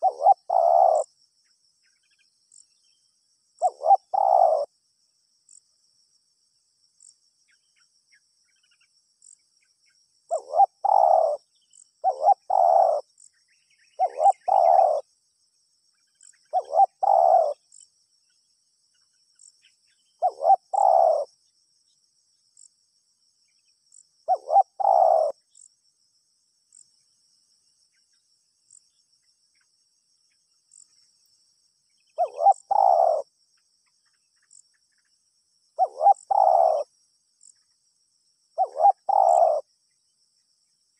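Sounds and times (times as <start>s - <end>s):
dove cooing: 0.0s - 1.1s, 3.6s - 4.7s, 10.3s - 11.4s, 12.0s - 13.1s, 14.0s - 15.0s, 16.5s - 17.6s, 20.2s - 21.3s, 24.3s - 25.4s, 32.2s - 33.3s, 35.8s - 36.9s, 38.6s - 39.7s
insect trilling: 0.0s - 1.1s, 3.6s - 4.7s, 10.3s - 11.4s, 12.0s - 13.1s, 14.0s - 15.1s, 16.5s - 17.8s, 20.2s - 21.3s, 24.3s - 25.7s, 32.0s - 34.6s, 35.7s - 37.6s, 38.6s - 39.7s.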